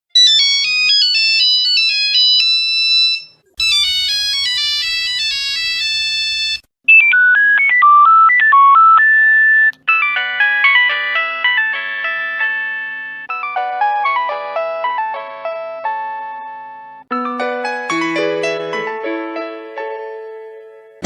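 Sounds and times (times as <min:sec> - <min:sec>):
phone ringtone melodies: 0:00.2 - 0:19.7.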